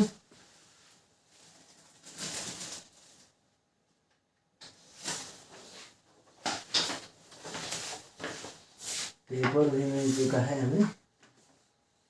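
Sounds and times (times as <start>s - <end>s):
paper rustling: 1.4s - 3.3s.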